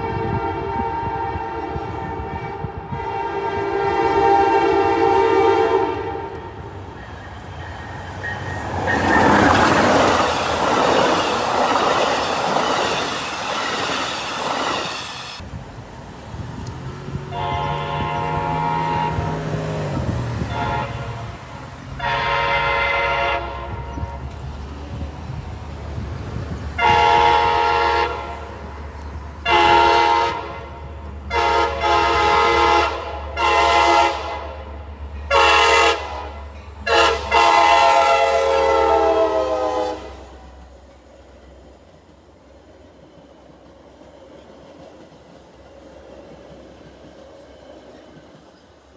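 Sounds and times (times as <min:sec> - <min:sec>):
train horn blasts: 0:00.0 - 0:06.7, 0:17.2 - 0:24.4, 0:26.8 - 0:28.8, 0:29.4 - 0:40.6
passing train rumble: 0:00.0 - 0:48.9.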